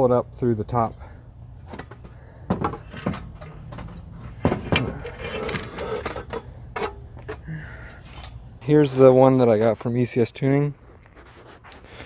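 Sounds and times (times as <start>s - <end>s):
knocks and clicks of hard parts: 1.7s - 7.4s.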